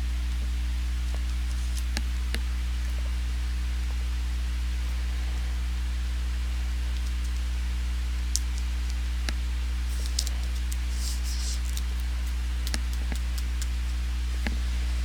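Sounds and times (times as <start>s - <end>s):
low electrical hum: 0.0s - 15.0s
cards clicking and rustling: 9.9s - 14.7s.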